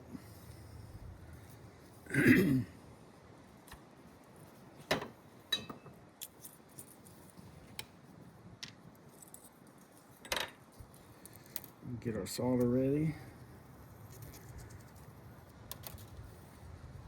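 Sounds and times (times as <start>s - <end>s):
metal tools clicking and knocking: 4.9s - 6.9s.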